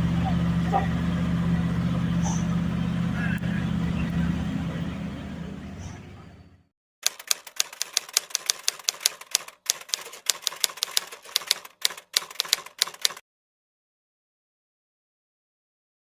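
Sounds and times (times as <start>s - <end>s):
typewriter key clacks: 7.0s - 13.2s.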